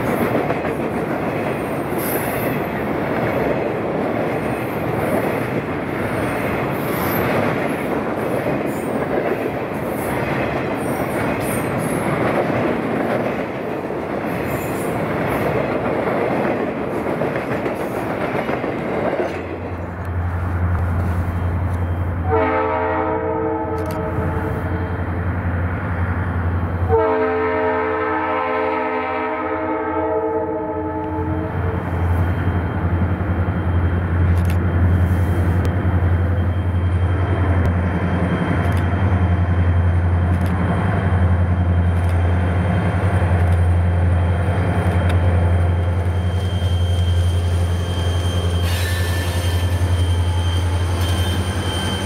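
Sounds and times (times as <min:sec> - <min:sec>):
locomotive engine drone: 0:19.4 - 0:22.4, 0:31.1 - 0:52.0
locomotive air horn: 0:22.2 - 0:24.8, 0:26.9 - 0:31.8
wheel squeal: 0:46.1 - 0:52.0.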